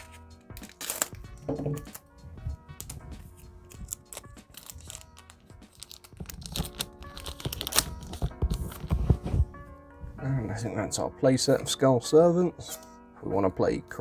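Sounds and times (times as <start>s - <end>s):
cards clicking and wrapper crinkling: 0.0s - 9.5s
background music: 0.0s - 14.0s.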